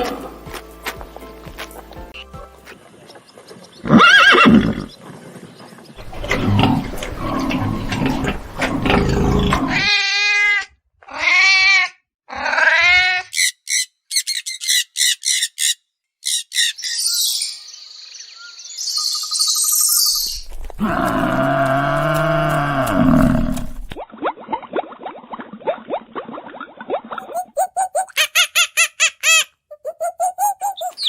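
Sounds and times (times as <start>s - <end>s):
animal grunting: 6.0s - 9.9s, 20.4s - 24.0s
loud animal call: 6.0s - 13.8s, 20.4s - 24.0s
wavering pitched animal calls: 27.2s - 31.0s.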